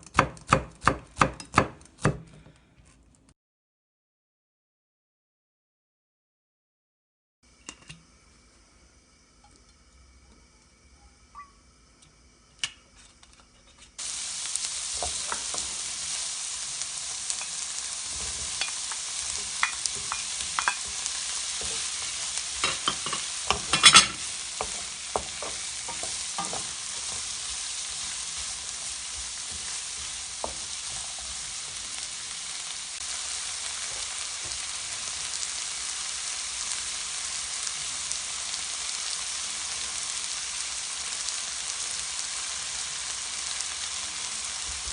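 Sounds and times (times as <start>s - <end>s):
food sizzling in a frying pan: 14.0s - 44.9s.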